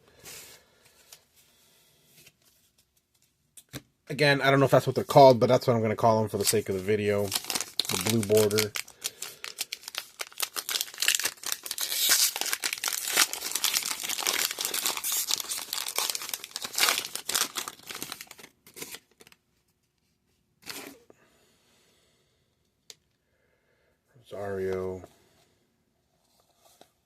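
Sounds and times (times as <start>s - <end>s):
foil wrapper tearing and crinkling: 7.2s - 19.4s.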